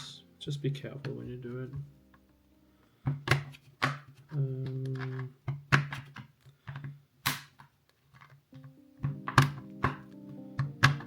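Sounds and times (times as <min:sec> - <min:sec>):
plastic clicks and snaps: 0:03.1 - 0:11.0.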